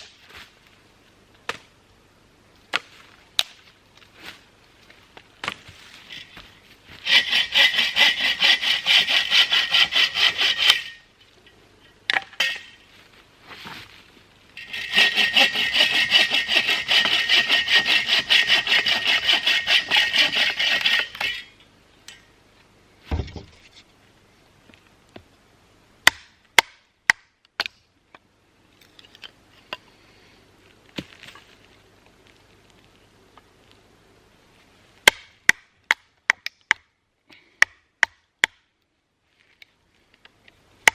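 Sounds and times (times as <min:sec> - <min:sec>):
hand saw cutting wood: 0:07.0 - 0:11.0, 0:14.6 - 0:21.4.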